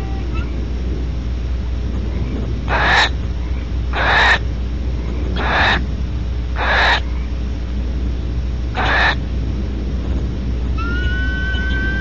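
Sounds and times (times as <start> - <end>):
steady low hum: 0.0 - 12.0
barn owl rasping calls: 2.7 - 4.5, 5.4 - 5.9, 6.6 - 7.3, 8.8 - 9.2, 10.8 - 12.0.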